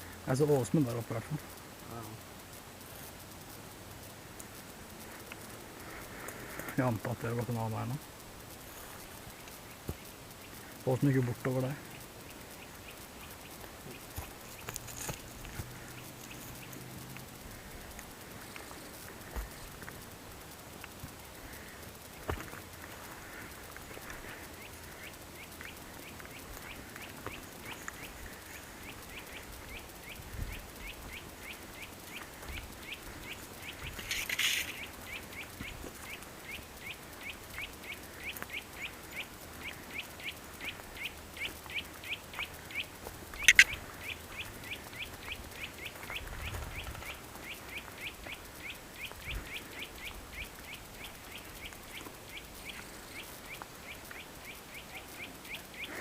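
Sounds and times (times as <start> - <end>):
bird chirping: 9.2 - 16.9, 23.0 - 56.0.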